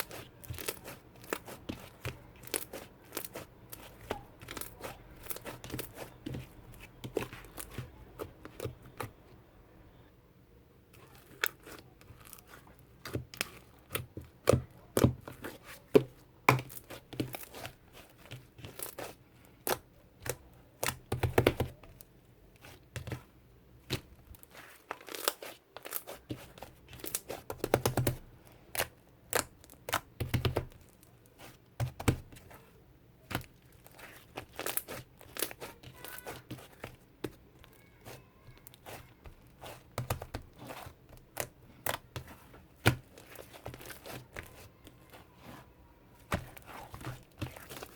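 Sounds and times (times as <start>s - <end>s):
crinkling and tearing: 23.9s - 27.4s, 33.4s - 47.9s.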